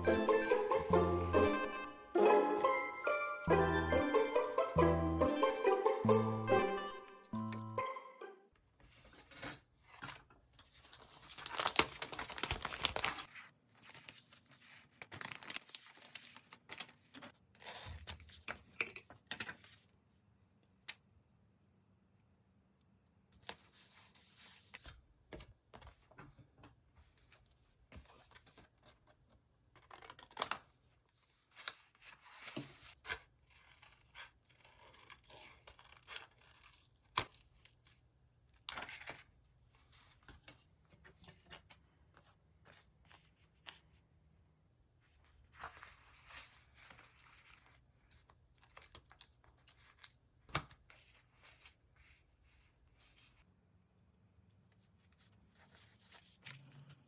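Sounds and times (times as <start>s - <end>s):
paper tearing and rustling: 10.9s - 17.0s.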